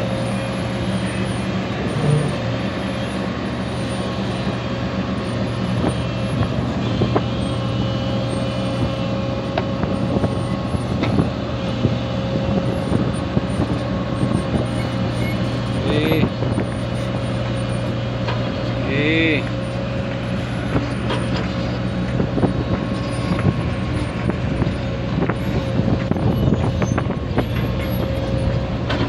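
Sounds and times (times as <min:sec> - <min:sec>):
excavator diesel engine running: 0:00.0 - 0:29.0
machine knocks and clanks: 0:23.2 - 0:29.0.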